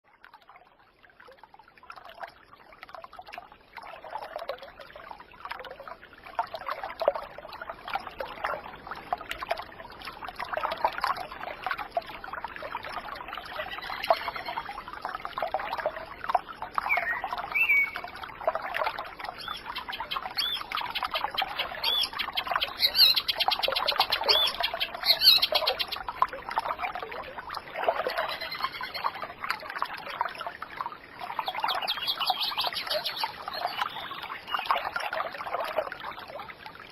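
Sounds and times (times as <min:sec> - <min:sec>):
water trickling and splashing: 0:00.0 - 0:36.9
birds chirping: 0:16.9 - 0:18.0, 0:19.4 - 0:26.0, 0:31.7 - 0:34.6.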